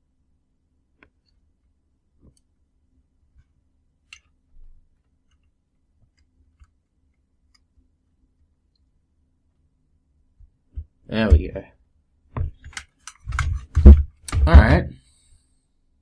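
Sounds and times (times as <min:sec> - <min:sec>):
plastic connector clicks and scrapes: 0:12.4 - 0:14.4
dull low thump: 0:13.3 - 0:14.8.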